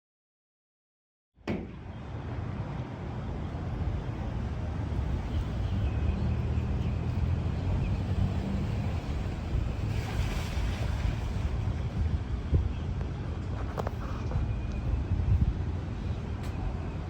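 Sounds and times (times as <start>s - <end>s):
faint engine hum: 1.5s - 17.0s
vehicle rumble: 1.6s - 17.0s
wind noise: 8.0s - 17.0s.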